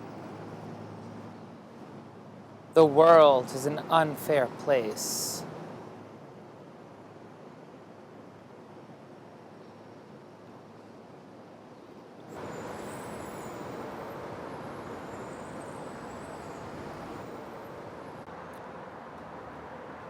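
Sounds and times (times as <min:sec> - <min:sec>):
road traffic rushing: 0:02.8 - 0:06.1, 0:12.3 - 0:20.0
faint high whining tones: 0:12.3 - 0:18.7.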